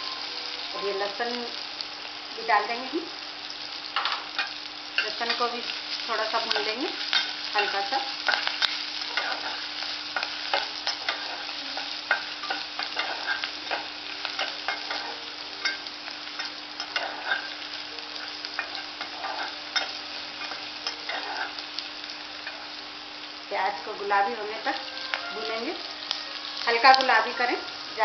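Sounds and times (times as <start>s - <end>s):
garlic sizzling in a pan: 0.0s - 28.0s
spatula scraping a pan: 6.4s - 21.8s.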